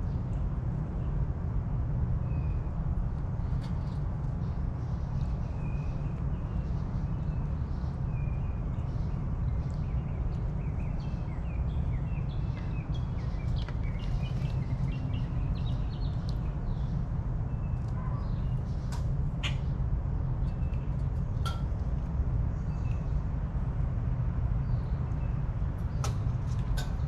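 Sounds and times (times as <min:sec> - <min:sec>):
small birds chirping: 0:03.4 - 0:23.3.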